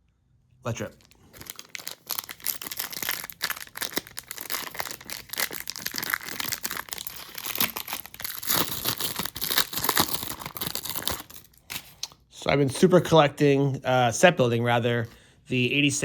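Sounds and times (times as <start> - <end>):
wrapper crinkling and crackling: 0.8 - 12.1
paper wrapper tearing: 0.9 - 12.1.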